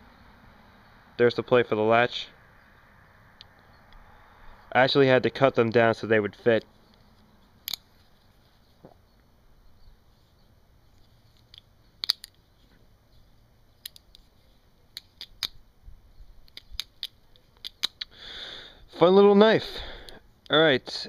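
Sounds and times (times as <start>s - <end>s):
butterfly knife metal clicks: 7.7s - 7.9s, 11.3s - 12.4s, 14.9s - 15.6s, 16.4s - 18.1s.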